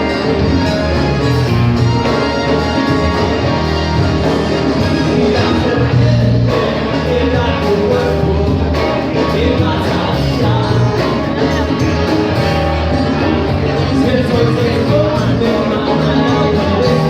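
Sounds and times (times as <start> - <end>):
rock band playing live: 0.0 - 17.0.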